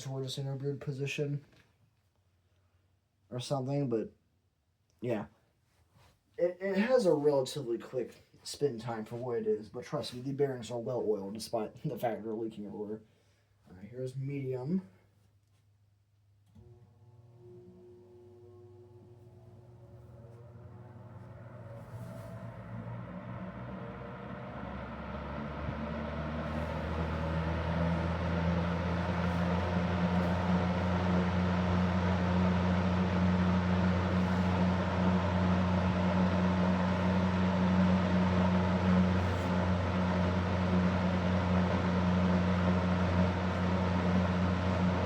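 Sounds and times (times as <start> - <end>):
fan motor hum: 16.6 - 45.0
rush of air from fan: 21.5 - 45.0.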